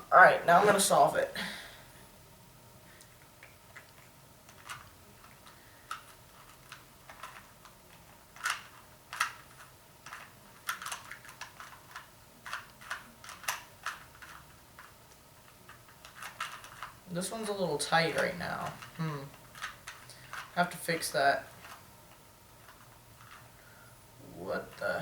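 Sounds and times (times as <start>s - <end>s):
puzzle cube plastic clicks: 3.4s - 17.0s.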